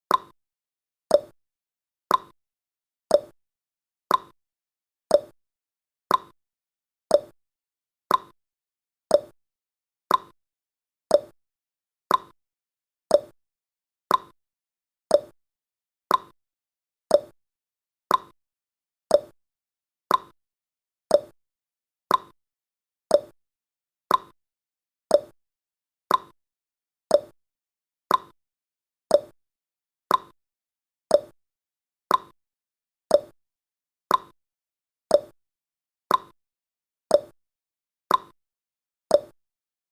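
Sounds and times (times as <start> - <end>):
clock ticking: 0.1 - 0.3, 1.1 - 1.3, 2.1 - 2.3, 3.1 - 3.3, 4.1 - 4.3, 5.1 - 5.3, 6.1 - 6.3, 7.1 - 7.3, 8.1 - 8.3, 9.1 - 9.3, 10.1 - 10.3, 11.1 - 11.3, 12.1 - 12.3, 13.1 - 13.3, 14.1 - 14.3, 15.1 - 15.3, 16.1 - 16.3, 17.1 - 17.3, 18.1 - 18.3, 19.1 - 19.3, 20.1 - 20.3, 21.1 - 21.3, 22.1 - 22.3, 23.1 - 23.3, 24.1 - 24.3, 25.1 - 25.3, 26.1 - 26.3, 27.1 - 27.3, 28.1 - 28.3, 29.1 - 29.3, 30.1 - 30.3, 31.1 - 31.4, 32.1 - 32.3, 33.1 - 33.4, 34.1 - 34.4, 35.1 - 35.4, 36.1 - 36.4, 37.1 - 37.4, 38.1 - 38.4, 39.1 - 39.4.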